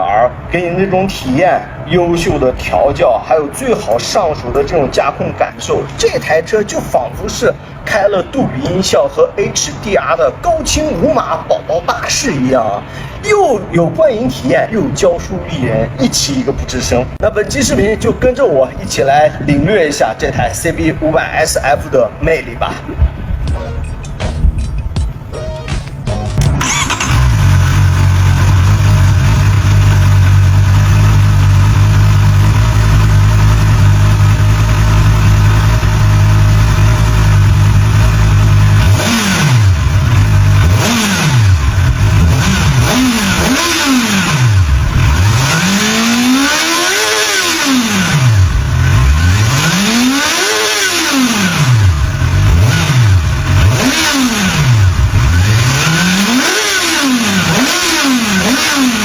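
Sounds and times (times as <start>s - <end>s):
motorcycle engine idling and revving: 25.9s - 59.0s.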